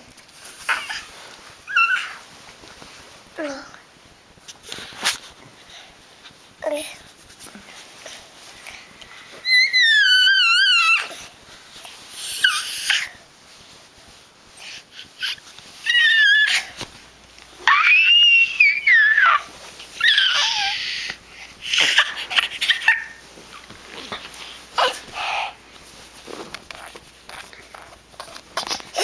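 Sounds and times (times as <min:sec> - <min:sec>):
dog whining and squealing: 0:01.7 - 0:02.2, 0:09.4 - 0:11.2, 0:15.1 - 0:16.7, 0:17.6 - 0:19.4, 0:20.0 - 0:20.9.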